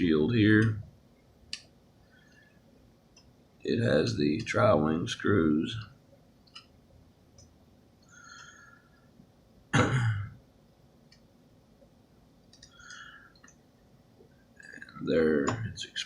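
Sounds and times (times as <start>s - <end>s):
person speaking: 0.0s - 1.0s, 3.6s - 6.0s, 14.6s - 16.0s.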